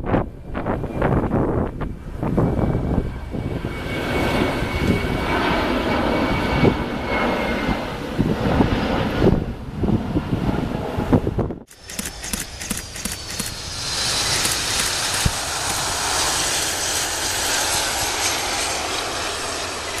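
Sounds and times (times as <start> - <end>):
jet engine roar: 0.0 - 20.0
high whine falling in pitch: 11.8 - 20.0.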